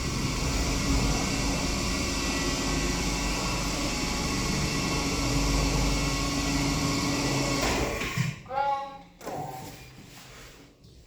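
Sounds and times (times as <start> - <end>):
lift car humming and rushing: 0.0 - 7.9.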